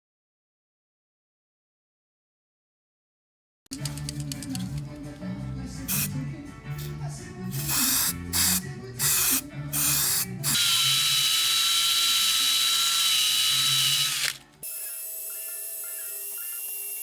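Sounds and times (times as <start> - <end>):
power tool whirring: 7.6 - 17.0.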